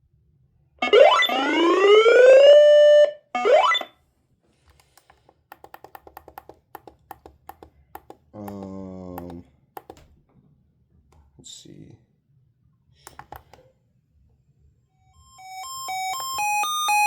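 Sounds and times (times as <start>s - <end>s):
rising alert siren tone: 0.8s - 3.9s, 15.2s - 17.0s.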